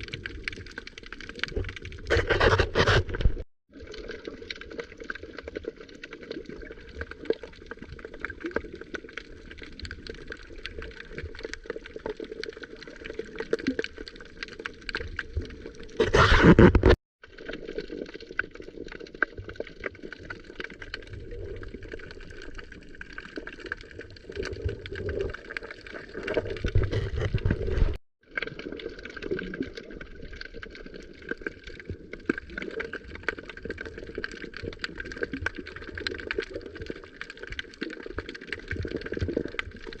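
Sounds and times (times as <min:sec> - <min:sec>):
seawater sloshing and gurgling: 0:00.0 - 0:40.0
small water splashes: 0:17.2 - 0:40.0.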